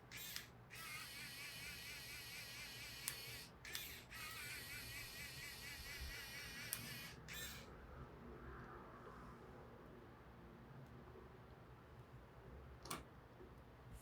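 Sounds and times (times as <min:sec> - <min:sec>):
small motor whirring: 0:00.0 - 0:07.7.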